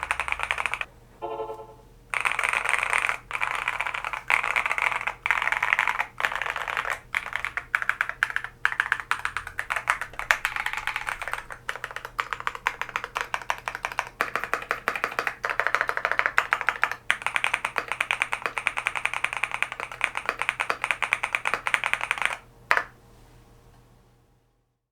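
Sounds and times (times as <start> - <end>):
fast mechanical keyboard typing: 0.0 - 0.9, 2.1 - 23.0.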